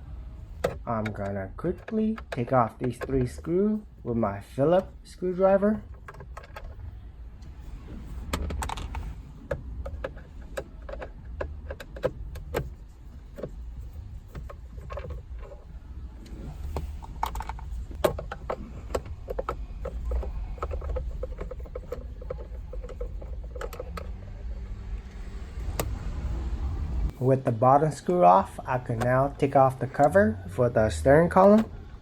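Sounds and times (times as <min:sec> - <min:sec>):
screwdriver clicks and rattles: 0:17.0 - 0:24.2.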